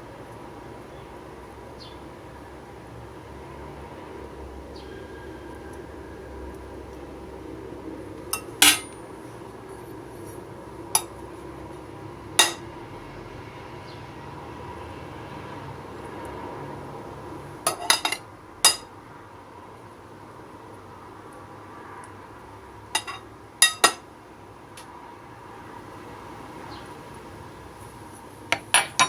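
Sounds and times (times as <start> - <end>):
low background noise: 0.0 - 29.0
metal utensil clinking on cookware: 8.3 - 9.0, 11.0 - 11.2, 12.4 - 12.7, 17.7 - 18.9, 23.0 - 24.0, 28.5 - 29.0.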